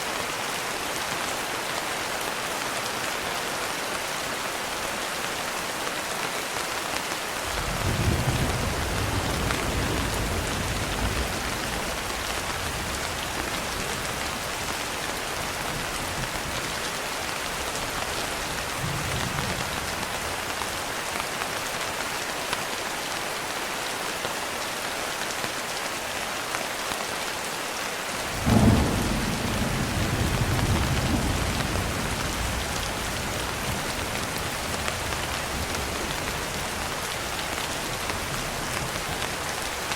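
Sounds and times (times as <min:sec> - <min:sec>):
steady rain falling: 0:00.0 - 0:39.9
thunder rumbling: 0:07.5 - 0:14.8, 0:28.3 - 0:36.9.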